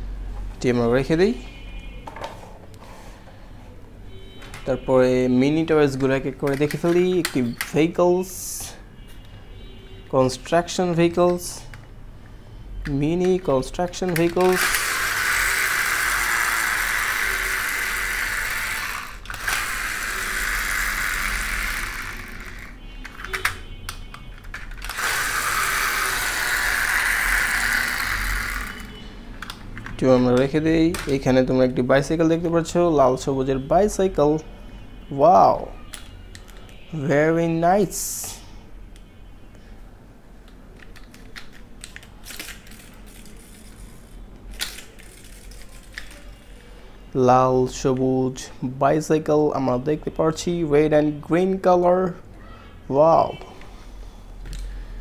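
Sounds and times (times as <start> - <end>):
plastic toy clicking and rattling: 5.9 - 7.8, 13.2 - 31.2, 40.8 - 46.4.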